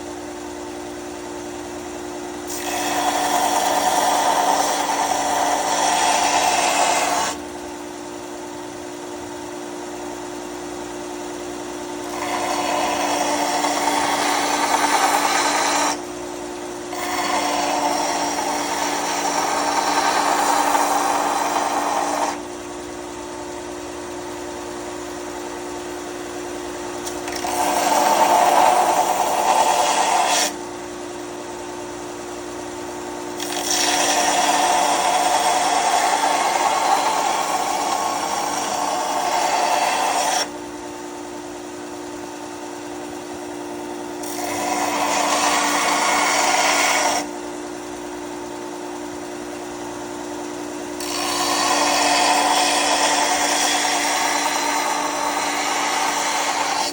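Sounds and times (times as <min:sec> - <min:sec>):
belt sander humming: 0:00.0 - 0:56.9
harsh grinding of workpiece: 0:02.4 - 0:07.5, 0:11.9 - 0:22.5, 0:27.0 - 0:30.7, 0:33.3 - 0:40.6, 0:44.2 - 0:47.5, 0:50.8 - 0:56.9.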